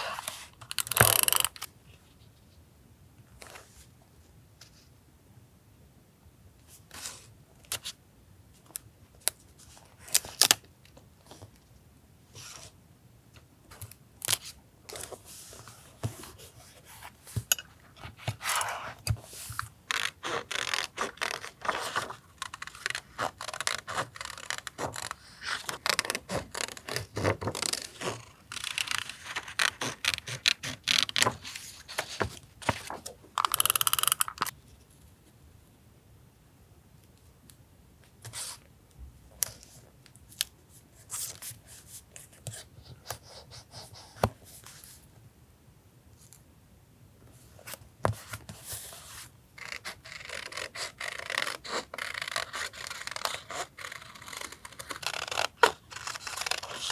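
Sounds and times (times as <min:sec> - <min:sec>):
paper and tape handled: 0:17.0 - 0:34.5, 0:48.1 - 0:56.9.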